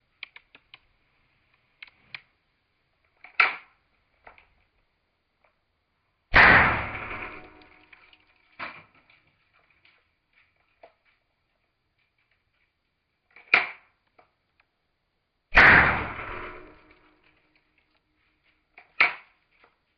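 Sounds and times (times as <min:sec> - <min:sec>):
revolver gunshot: 0:06.3 - 0:08.0, 0:15.5 - 0:17.1.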